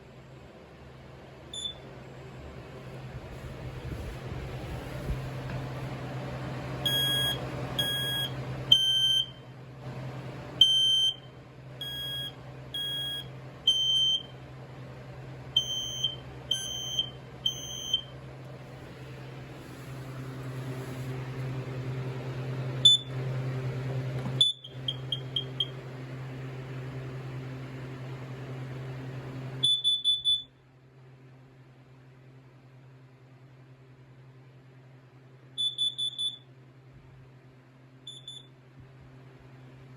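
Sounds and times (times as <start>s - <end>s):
low steady hum: 0.0s - 39.9s
smoke alarm beeps: 1.5s - 1.9s, 6.8s - 9.4s, 10.6s - 14.4s, 15.5s - 18.2s, 22.8s - 23.2s, 24.4s - 25.8s, 29.6s - 30.6s, 35.6s - 36.5s, 38.1s - 38.6s.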